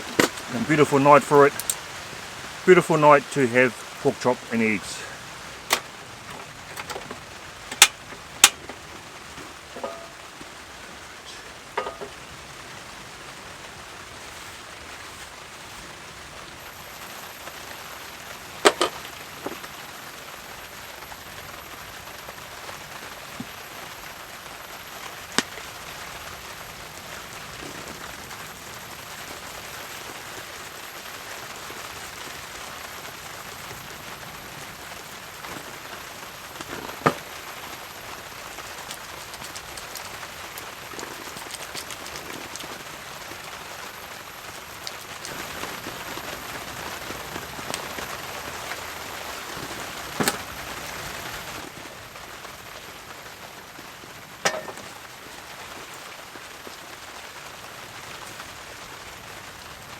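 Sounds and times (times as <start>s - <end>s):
cooking gear clicks and knocks: 0.0s - 1.8s, 5.7s - 8.8s, 18.6s - 19.6s, 36.5s - 42.9s
rain on a tarp: 0.0s - 59.9s.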